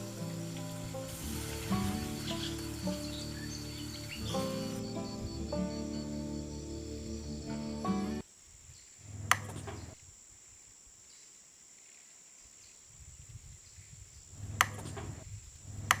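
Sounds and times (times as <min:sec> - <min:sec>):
background music: 0:00.0 - 0:08.2
sharp clicks with low hum: 0:09.3 - 0:09.7.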